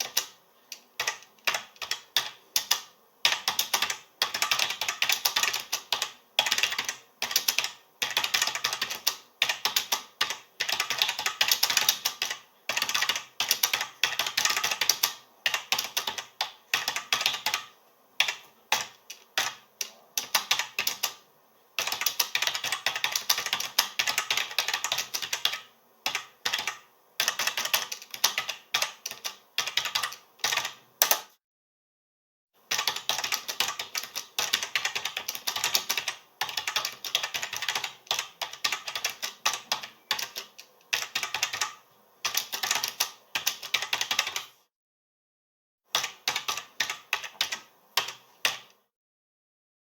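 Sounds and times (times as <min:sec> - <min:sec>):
typing on computer keyboard: 0:00.0 - 0:21.2, 0:21.8 - 0:31.3, 0:32.7 - 0:44.5, 0:45.9 - 0:48.8.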